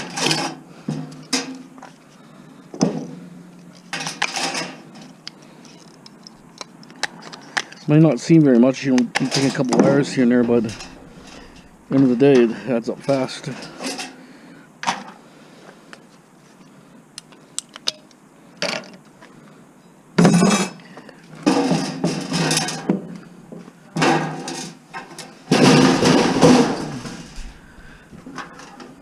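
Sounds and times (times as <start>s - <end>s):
small parts clicking and tapping: 3.6s - 7.8s, 17.2s - 19.3s.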